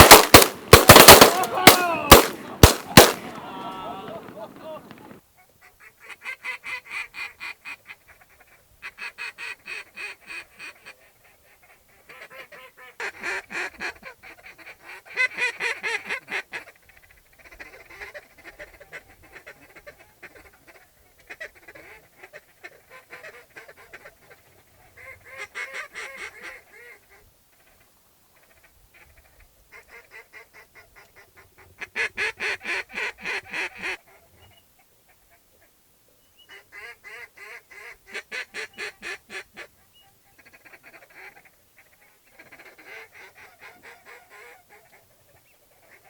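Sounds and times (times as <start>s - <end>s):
waterfowl calling: 0.0s - 5.1s.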